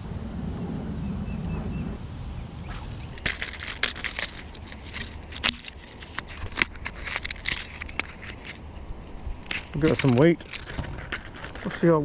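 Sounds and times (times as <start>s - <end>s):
plastic crinkling and rustling: 2.7s - 8.6s, 9.4s - 12.0s.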